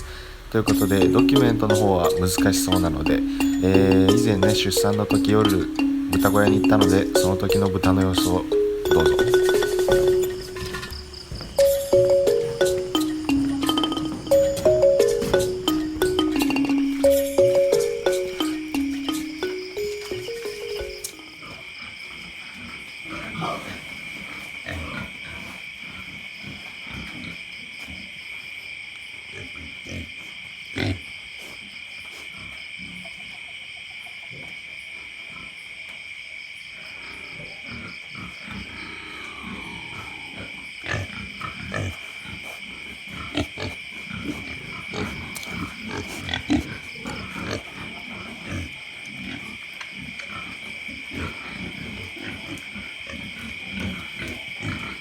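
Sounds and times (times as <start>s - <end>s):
night insects trilling: 0.0s - 55.0s
pigs snoring and grunting: 37.5s - 55.0s.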